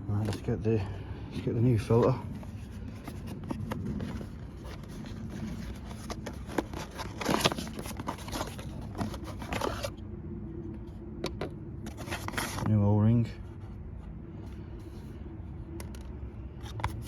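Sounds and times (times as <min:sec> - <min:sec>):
light clicks and scrapes: 0:00.1 - 0:10.0, 0:11.3 - 0:17.0
packaging rustling: 0:01.9 - 0:09.9, 0:11.9 - 0:12.7.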